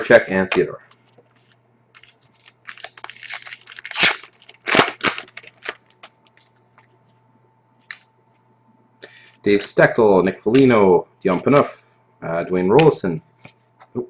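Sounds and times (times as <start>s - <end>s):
wrapper tearing and crinkling: 2.0s - 6.1s.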